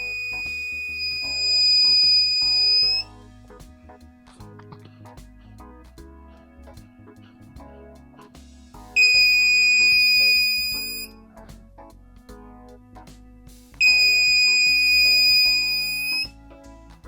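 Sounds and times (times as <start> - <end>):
smoke detector alarm tone: 0.0 - 3.1, 9.0 - 11.1, 13.8 - 16.3
background music: 0.0 - 17.0.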